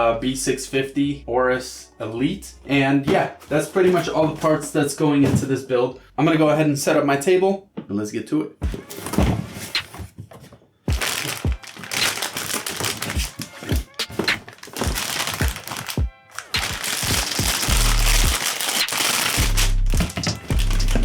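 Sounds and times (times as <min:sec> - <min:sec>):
deep bass notes: 0:00.0 - 0:02.8, 0:17.4 - 0:18.4, 0:19.4 - 0:21.0
background music with steady beat: 0:00.0 - 0:06.5, 0:08.6 - 0:10.1, 0:10.8 - 0:21.0.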